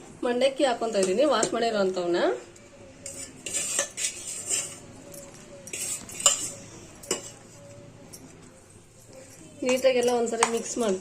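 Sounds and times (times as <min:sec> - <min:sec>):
utensil clinking against bowl: 0:03.0 - 0:07.4, 0:09.1 - 0:11.0.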